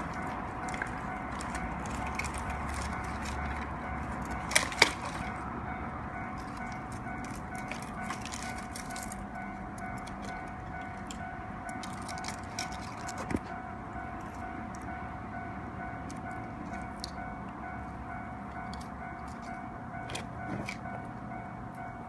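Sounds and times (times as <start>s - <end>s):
bamboo bonfire crackling: 0.0s - 5.6s, 6.4s - 13.6s.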